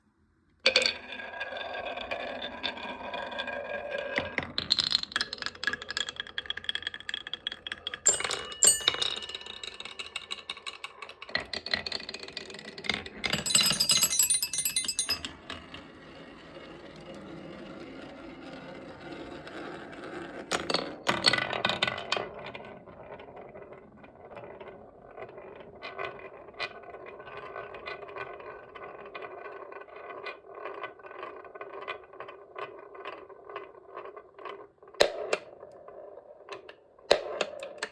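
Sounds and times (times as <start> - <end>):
chime bars ringing: 8.1 - 10.8, 13.4 - 15.3
marbles rolling down wooden run: 13.3 - 15.3.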